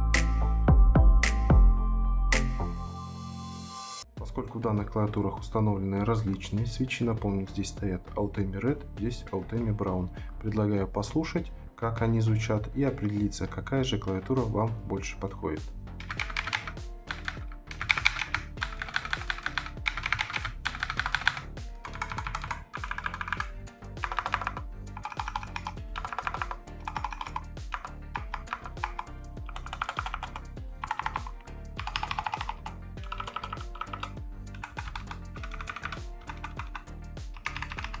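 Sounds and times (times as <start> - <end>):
quiet background music: 0.0 - 38.0
mechanical keyboard key clicks: 16.0 - 36.8, 37.4 - 38.0.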